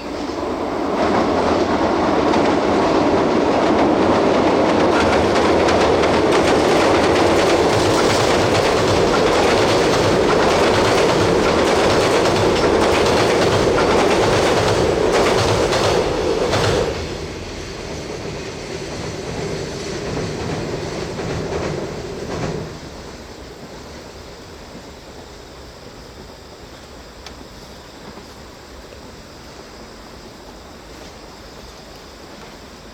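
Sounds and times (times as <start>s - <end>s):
train wagons clickety-clack: 0.0s - 32.8s
faint train rumble: 0.0s - 32.9s.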